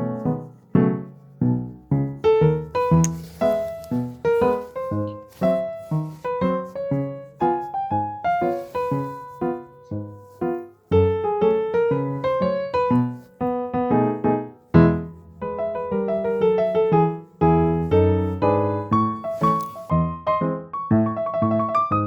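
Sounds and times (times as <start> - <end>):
light piano tune: 0.0 - 22.0.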